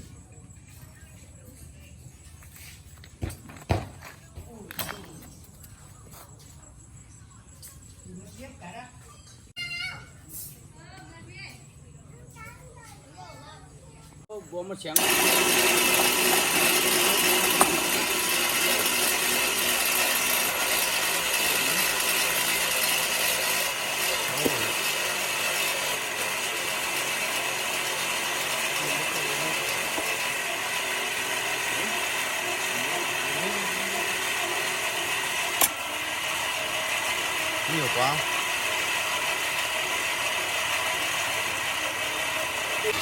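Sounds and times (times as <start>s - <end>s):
electric motor of concrete mixer: 14.8s - 43.0s.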